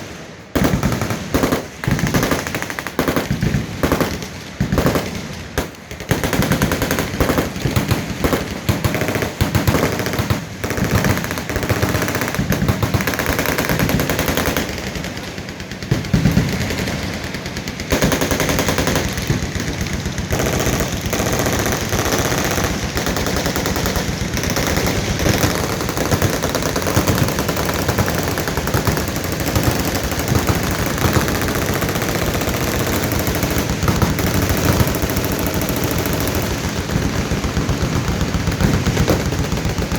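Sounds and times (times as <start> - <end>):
machine guns firing: 0.0 - 39.9.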